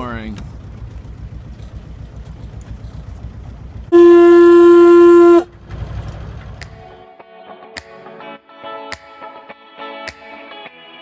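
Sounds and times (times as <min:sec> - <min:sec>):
boat engine rumbling: 0:00.0 - 0:06.9
horn blast: 0:03.9 - 0:05.6.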